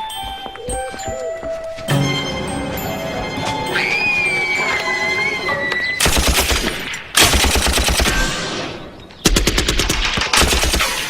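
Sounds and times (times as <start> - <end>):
background music: 0.0 - 7.6
machine gun firing: 6.0 - 8.6, 9.3 - 11.0.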